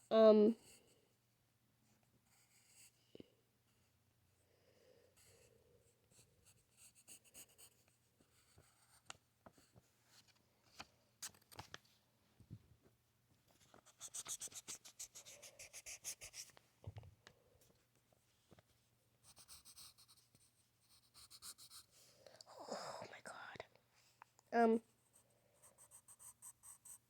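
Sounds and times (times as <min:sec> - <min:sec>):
scratchy drawing strokes: 0:13.8 - 0:16.5, 0:19.3 - 0:21.9, 0:25.7 - 0:27.0.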